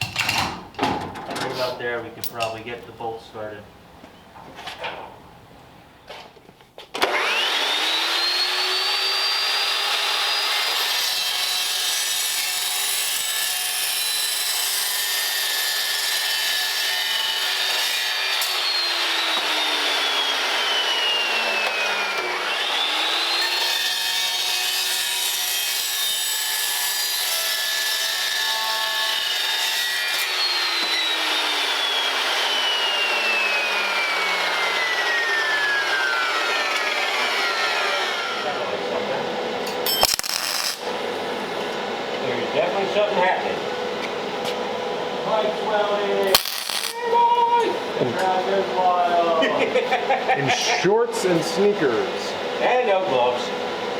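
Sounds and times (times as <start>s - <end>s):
power saw cutting metal tubing: 7.0s - 38.8s, 39.6s - 41.8s, 45.3s - 48.6s.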